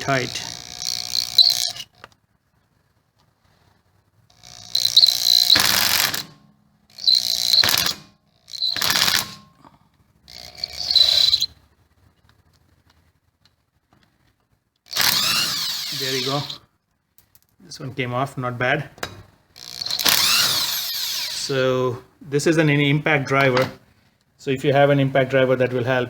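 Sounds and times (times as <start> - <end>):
impact driver hammering: 4.4 - 9.6, 14.9 - 16.6, 19.0 - 21.5.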